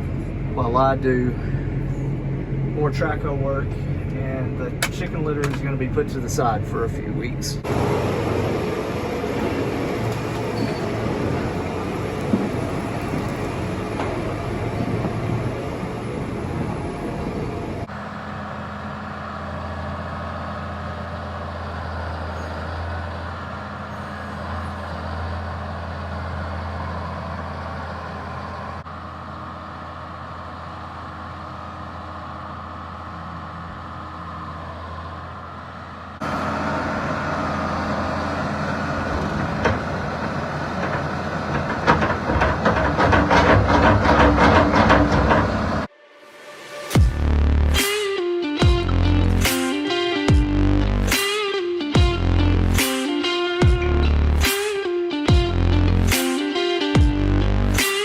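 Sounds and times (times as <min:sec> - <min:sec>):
tractor diesel engine running: 0:00.0 - 0:45.9, 0:46.9 - 0:47.9, 0:48.5 - 0:51.2, 0:51.9 - 0:54.5, 0:55.3 - 0:57.9
music with a beat: 0:47.0 - 0:58.0.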